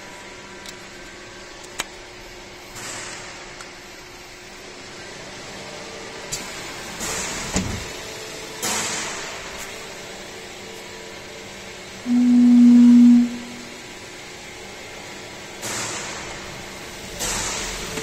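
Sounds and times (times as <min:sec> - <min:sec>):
welding machine low buzz: 0:12.0 - 0:14.2.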